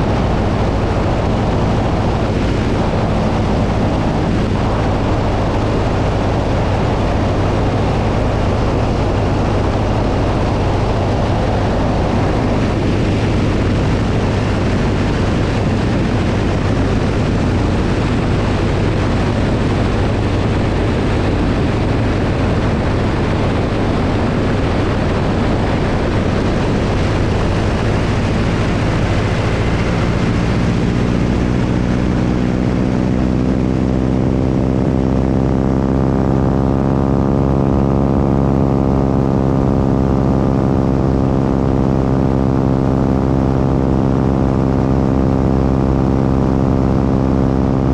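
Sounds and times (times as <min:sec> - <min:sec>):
propeller airplane engine droning: 0:00.0 - 0:47.9
wind rush on microphone: 0:00.0 - 0:47.9.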